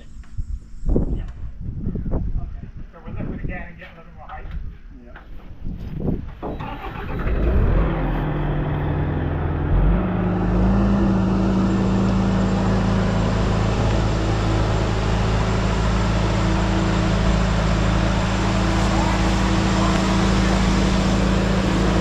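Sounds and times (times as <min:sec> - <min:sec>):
heavy machine engine revving: 0:06.5 - 0:22.0.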